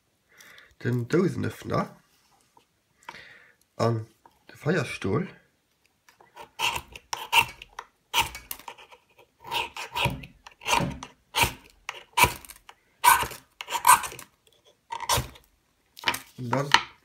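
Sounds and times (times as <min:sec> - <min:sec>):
metal scraping ferro rod: 0:06.2 - 0:15.4.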